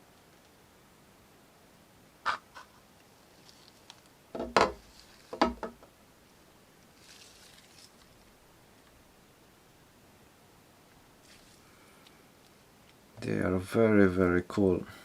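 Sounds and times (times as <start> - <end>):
soft rustle: 2.5 - 5.6, 6.2 - 9.1, 10.8 - 13.3
hard objects knocking: 4.3 - 5.9.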